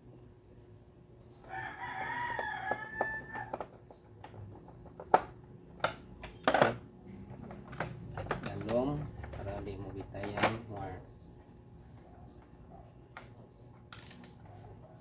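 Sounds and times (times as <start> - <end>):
rooster crowing: 1.4 - 3.6.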